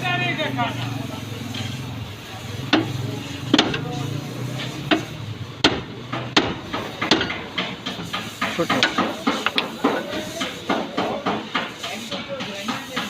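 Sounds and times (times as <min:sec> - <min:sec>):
hammer striking metal: 0:02.6 - 0:13.0.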